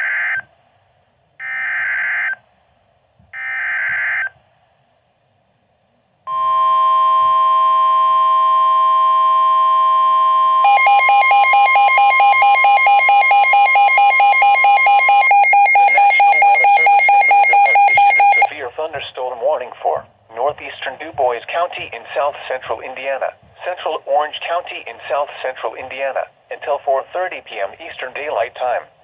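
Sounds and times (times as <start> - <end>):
steady warning alarm tone: 6.3 - 18.5
fast pulsing alarm beep: 10.6 - 18.5.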